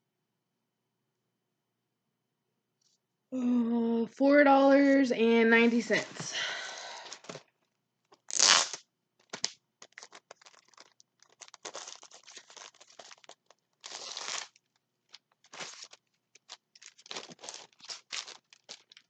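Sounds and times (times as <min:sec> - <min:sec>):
packaging crinkling and rustling: 0:07.0 - 0:07.5, 0:08.1 - 0:19.0
packaging ripping: 0:08.2 - 0:19.0.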